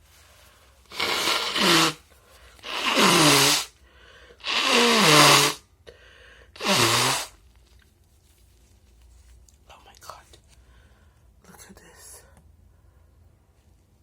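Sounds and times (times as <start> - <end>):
person blowing nose: 0.8 - 3.8, 4.4 - 5.8, 6.5 - 7.4.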